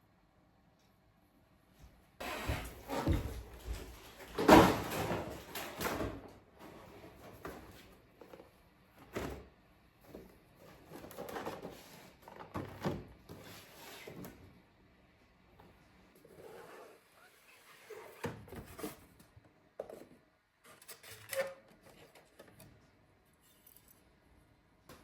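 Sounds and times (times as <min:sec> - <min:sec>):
objects knocking and clattering: 0:02.6 - 0:07.8.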